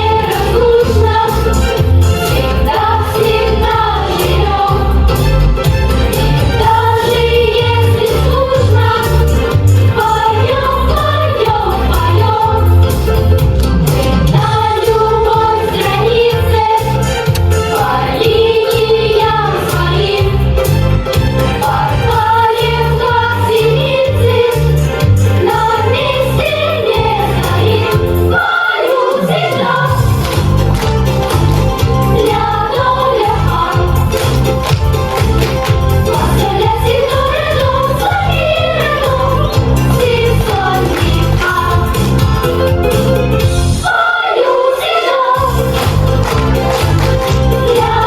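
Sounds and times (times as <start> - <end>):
group of voices singing: 0.0 - 5.5, 6.1 - 43.0, 43.7 - 48.0
accompaniment with steady bass beat: 29.9 - 43.8, 45.4 - 48.0.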